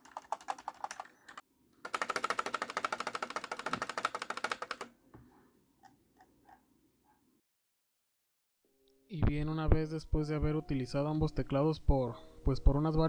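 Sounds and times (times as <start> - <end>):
fast typing on mechanical keyboard: 0.0 - 4.9.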